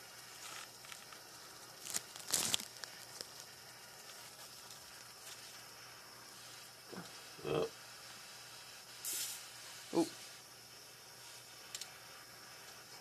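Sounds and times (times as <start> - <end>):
blowtorch flame hissing: 0.0 - 13.0.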